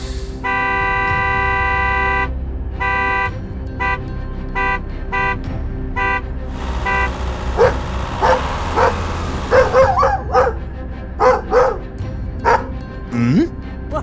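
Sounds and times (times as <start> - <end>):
vehicle horn toots: 0.4 - 10.5
dog barking: 7.6 - 10.6, 11.2 - 11.8, 12.5 - 12.7.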